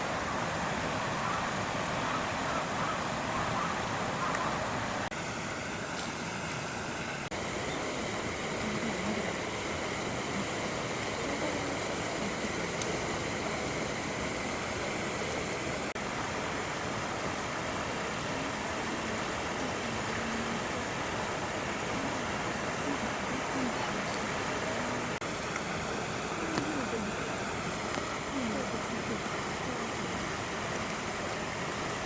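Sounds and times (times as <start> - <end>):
outdoor background hiss: 0.0 - 32.0.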